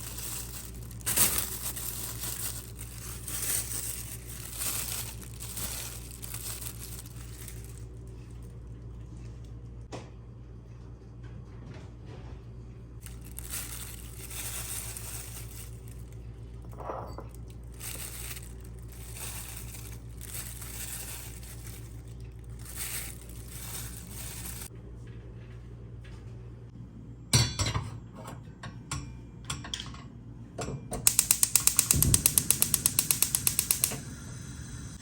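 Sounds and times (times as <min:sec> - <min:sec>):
plastic or paper crinkling: 0:00.0 - 0:09.2, 0:13.0 - 0:16.7, 0:17.3 - 0:24.7
steady low hum: 0:00.0 - 0:35.0.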